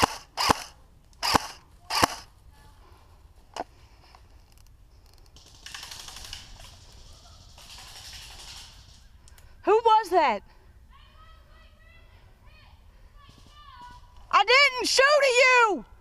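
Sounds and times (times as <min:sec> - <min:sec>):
airsoft guns firing: 0:00.0 - 0:02.3
steady rustling hiss: 0:00.0 - 0:16.0.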